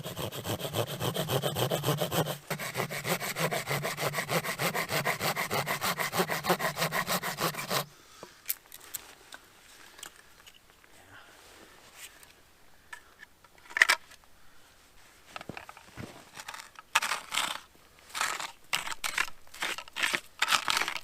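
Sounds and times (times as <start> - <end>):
hand saw cutting wood: 0.0 - 7.9.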